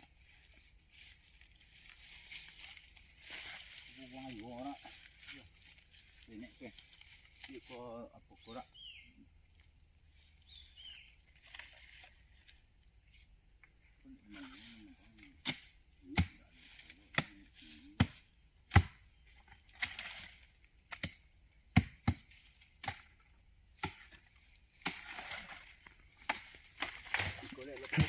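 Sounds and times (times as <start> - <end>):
high-pitched insect drone: 0.0 - 21.6.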